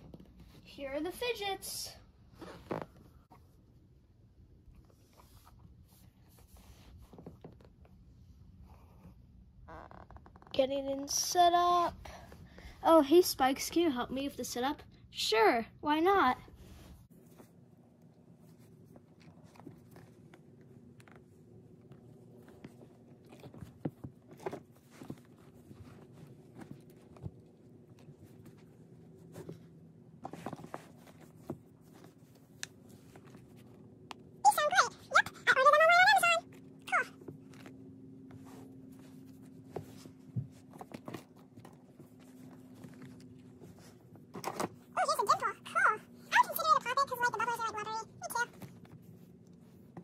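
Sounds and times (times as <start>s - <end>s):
rustling: 16.5s - 34.7s, 36.4s - 44.8s.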